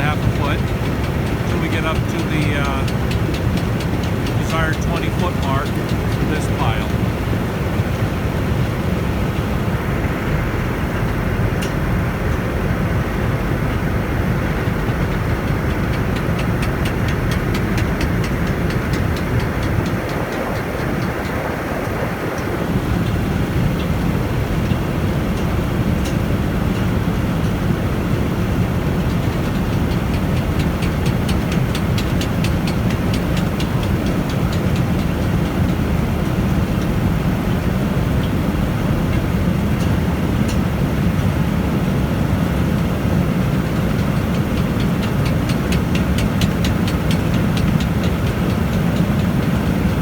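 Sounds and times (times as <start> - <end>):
heavy machinery conveyors running: 0.0 - 50.0.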